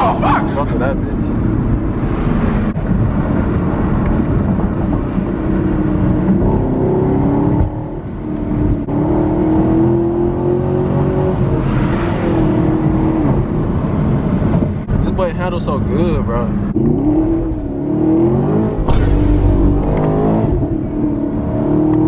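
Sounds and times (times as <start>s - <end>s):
car engine accelerating hard: 16.6s - 22.0s.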